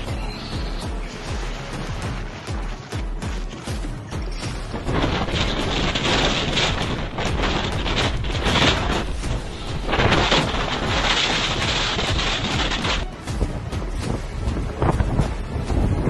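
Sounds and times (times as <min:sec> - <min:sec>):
storm wind buffeting microphone: 0:04.5 - 0:16.0.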